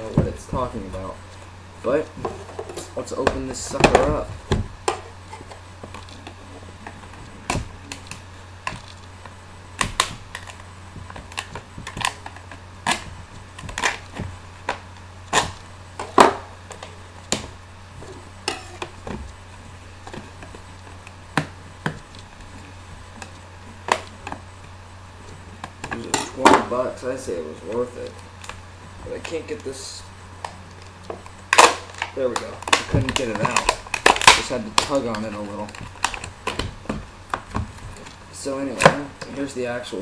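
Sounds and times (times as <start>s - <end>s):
steady low hum: 0.0s - 40.0s
box and packaging handling: 30.4s - 39.5s.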